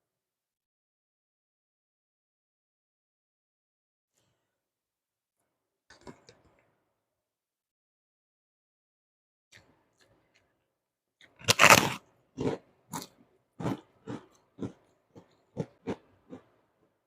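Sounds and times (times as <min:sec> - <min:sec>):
crunchy cracker chewing: 0:11.2 - 0:16.5.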